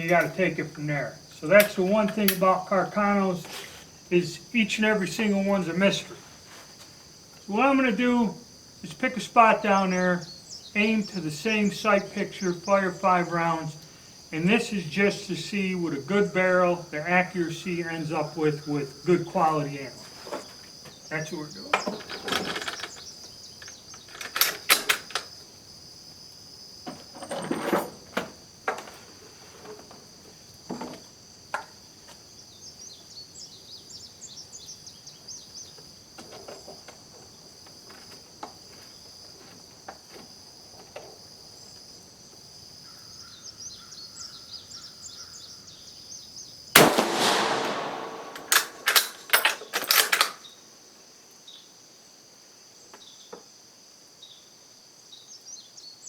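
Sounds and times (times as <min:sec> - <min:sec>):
crickets chirping: 0:00.0 - 0:56.0
rifle shot: 0:46.8 - 0:49.3
rifle bolt metallic clicks: 0:46.8 - 0:50.3
rifle handling knocks and clicks: 0:46.9 - 0:50.4.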